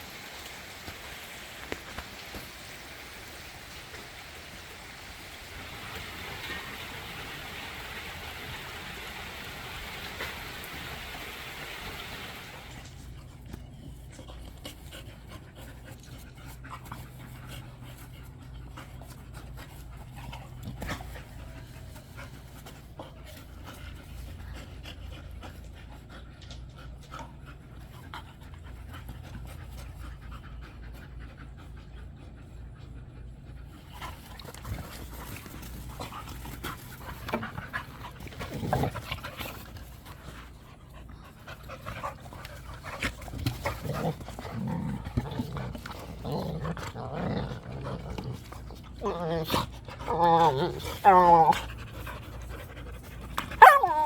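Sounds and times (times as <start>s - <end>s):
dog panting: 13.3s - 47.0s
dog sounds: 33.8s - 54.0s.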